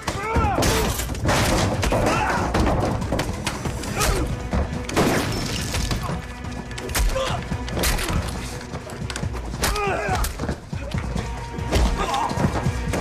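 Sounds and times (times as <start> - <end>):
dramatic soundtrack music: 0.0 - 13.0
sharp hits and crashes: 0.1 - 8.4.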